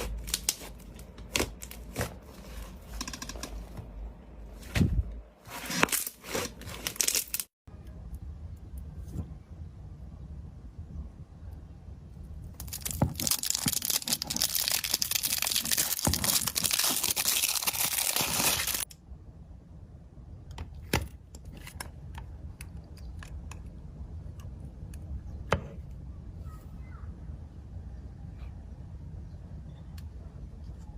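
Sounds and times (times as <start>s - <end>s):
slime crackling: 12.6s - 18.9s.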